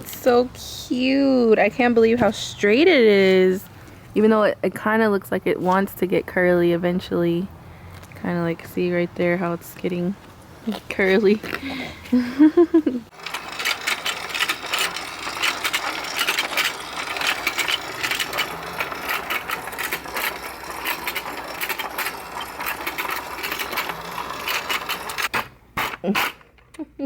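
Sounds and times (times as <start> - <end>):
small mechanism clicking and rattling: 13.1 - 26.8.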